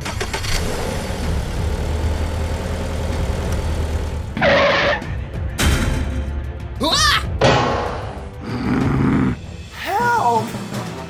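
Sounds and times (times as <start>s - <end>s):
small engine humming: 0.0s - 4.4s
harsh engine burst: 0.0s - 4.9s.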